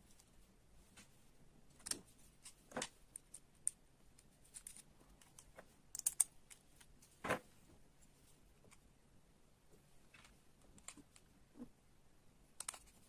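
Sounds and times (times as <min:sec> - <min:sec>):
small plastic parts clicking: 0:01.7 - 0:07.0, 0:12.6 - 0:13.0.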